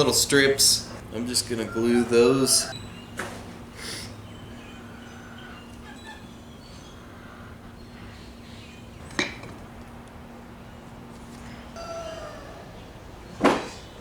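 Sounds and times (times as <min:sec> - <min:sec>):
faint chirping: 0:00.0 - 0:03.2
steady low hum: 0:00.0 - 0:05.6.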